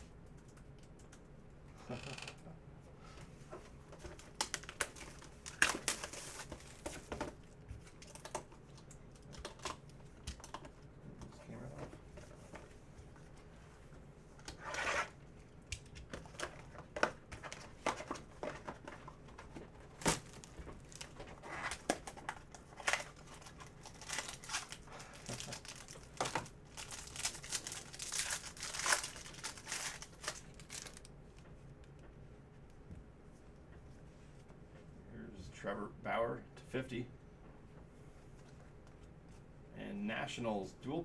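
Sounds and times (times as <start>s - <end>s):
wrapping crinkling and tearing: 4.2s - 7.0s, 16.2s - 31.4s.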